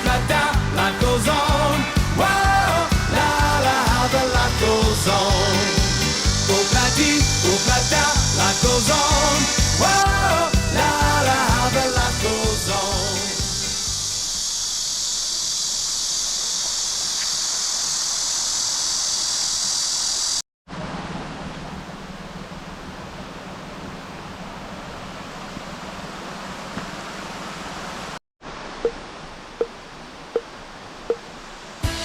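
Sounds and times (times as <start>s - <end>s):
stream rushing: 0.0s - 14.4s, 20.7s - 32.0s.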